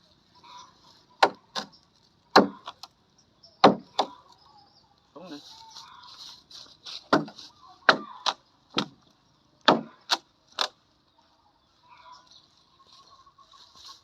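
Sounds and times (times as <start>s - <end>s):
knocks on wood: 7.1s - 8.0s.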